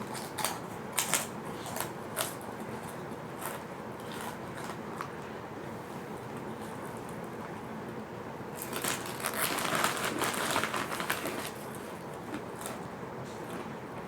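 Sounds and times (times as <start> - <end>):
crackers crunching: 0.0 - 5.2, 8.5 - 13.8.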